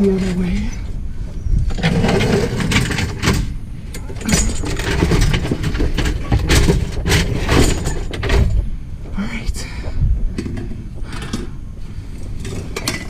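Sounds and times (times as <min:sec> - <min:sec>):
low rumble: 0:00.0 - 0:13.0
scrap metal clattering and scraping: 0:01.7 - 0:08.8, 0:10.3 - 0:13.0.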